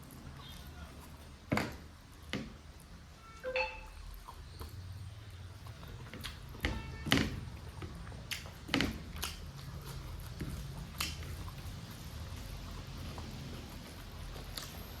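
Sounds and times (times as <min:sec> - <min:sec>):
chewing mouth clicks and smacks: 0:03.9 - 0:06.6, 0:07.5 - 0:15.0.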